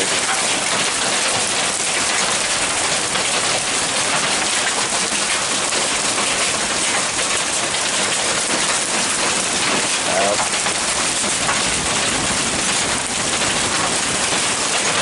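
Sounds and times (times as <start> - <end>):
hail and rain pelting down: 0.0 - 15.0.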